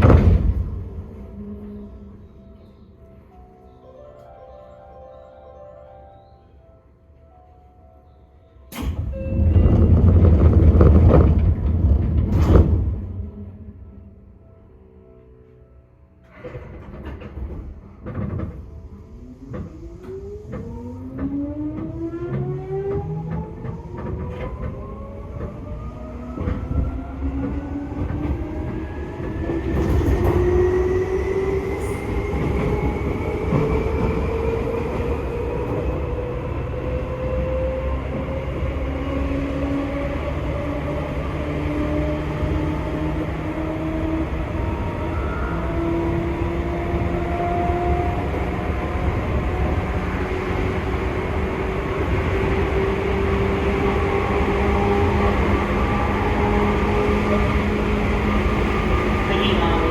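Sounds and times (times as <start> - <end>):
train running gear rumble: 0.0 - 3.5, 8.7 - 59.9
train clunks: 0.0 - 5.9, 8.6 - 14.2, 16.2 - 59.9.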